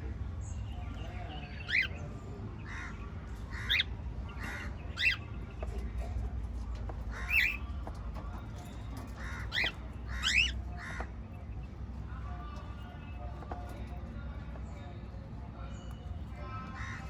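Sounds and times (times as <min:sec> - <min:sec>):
parrots chirping: 0:02.7 - 0:05.4, 0:07.1 - 0:07.7, 0:09.0 - 0:11.1.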